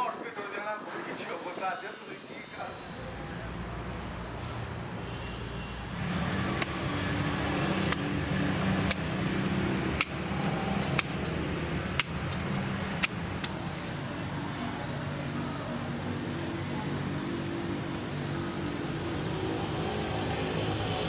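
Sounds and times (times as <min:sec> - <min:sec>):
workshop machine hum: 0:06.0 - 0:14.6.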